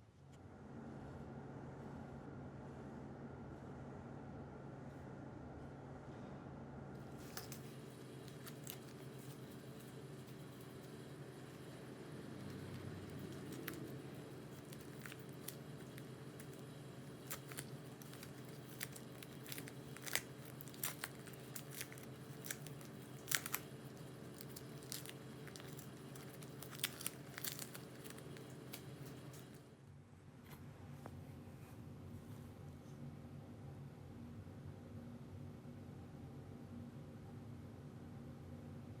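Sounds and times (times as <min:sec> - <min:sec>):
steady low hum: 0:00.0 - 0:39.0.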